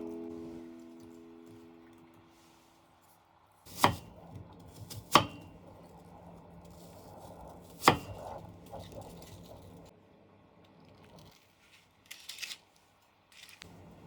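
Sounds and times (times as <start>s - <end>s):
knife chopping on cutting board: 3.7s - 4.1s, 4.8s - 5.5s.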